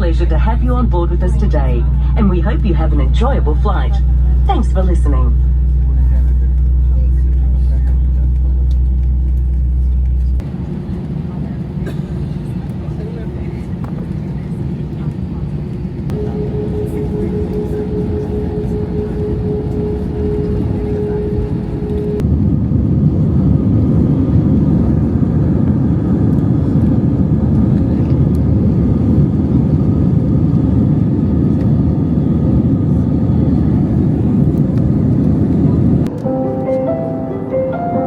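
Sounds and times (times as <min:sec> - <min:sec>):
held whine: 0:00.0 - 0:11.1, 0:15.8 - 0:22.8
airliner engine rumble: 0:00.0 - 0:38.0.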